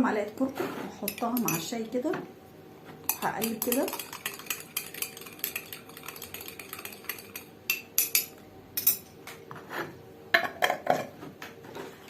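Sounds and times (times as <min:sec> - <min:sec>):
spoon clinking in a cup: 0:01.1 - 0:01.7, 0:03.1 - 0:09.0.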